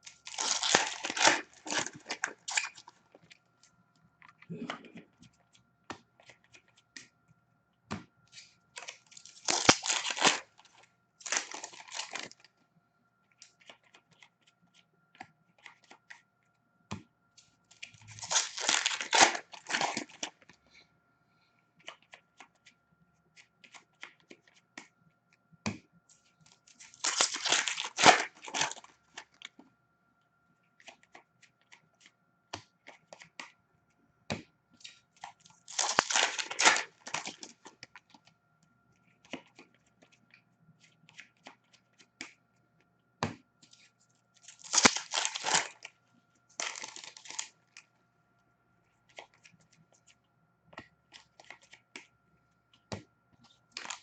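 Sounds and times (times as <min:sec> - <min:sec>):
foil wrappers tearing and crinkling: 0:00.0 - 0:02.9, 0:08.8 - 0:12.5, 0:18.0 - 0:20.3, 0:26.8 - 0:29.3, 0:35.5 - 0:37.6, 0:44.4 - 0:45.9, 0:46.6 - 0:47.5, 0:53.8 - 0:54.0
cards clicking and tapping: 0:04.8 - 0:07.1.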